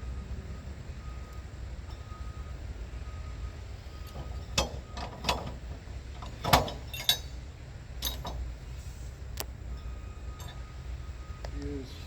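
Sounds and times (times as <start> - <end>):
steady low rumble: 0.0 - 12.0
sharp metallic clinks and knocks: 4.0 - 8.8, 9.7 - 10.7.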